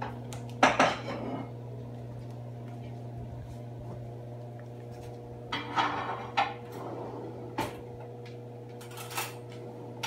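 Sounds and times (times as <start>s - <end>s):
steady low hum: 0.0s - 10.0s
metal utensils clattering: 8.8s - 9.4s.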